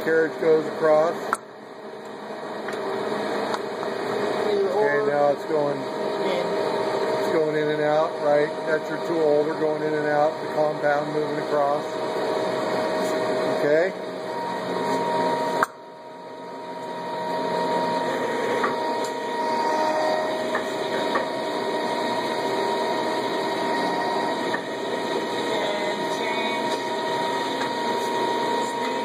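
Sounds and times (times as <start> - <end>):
lathe running with gear whine: 0.0 - 29.0.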